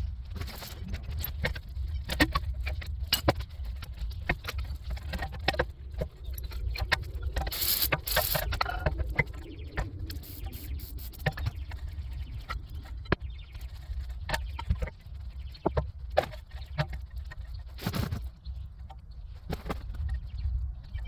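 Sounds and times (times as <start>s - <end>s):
low steady rumble: 0.0s - 21.0s
metal parts clattering: 0.4s - 1.5s, 7.4s - 8.9s
metal tools clicking and clinking: 0.4s - 1.6s, 7.4s - 9.1s.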